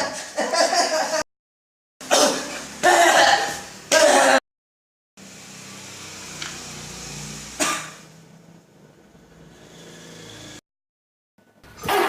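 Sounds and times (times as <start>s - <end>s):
short sharp cough: 2.0s - 4.4s, 7.6s - 8.0s.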